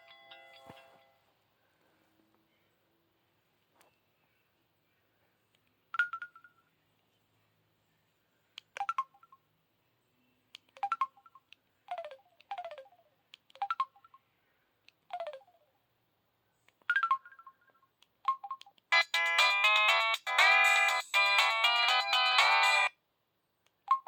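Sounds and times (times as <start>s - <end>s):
ringtone melody: 6.0s - 6.6s, 8.8s - 9.4s, 10.8s - 13.0s, 13.6s - 14.0s, 15.1s - 15.6s, 16.9s - 17.7s, 18.3s - 22.9s
phone ringtone chimes: 16.9s - 17.6s, 18.3s - 22.9s.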